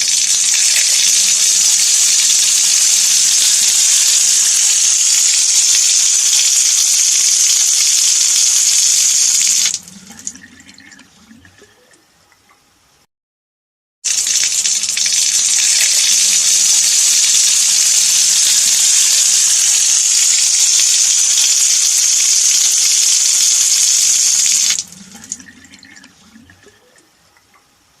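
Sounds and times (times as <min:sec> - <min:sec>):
tap water running into sink: 0:00.0 - 0:11.1, 0:14.1 - 0:26.8
water trickling and dripping: 0:09.6 - 0:12.6, 0:20.4 - 0:27.8.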